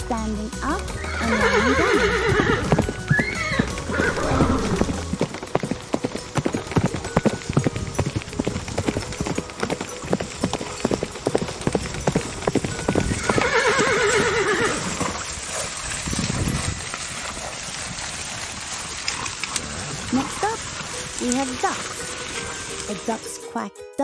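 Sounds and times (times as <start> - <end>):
horse hooves clip-clopping: 0.0 - 23.4
horse whinnying: 1.0 - 5.3, 13.0 - 15.6.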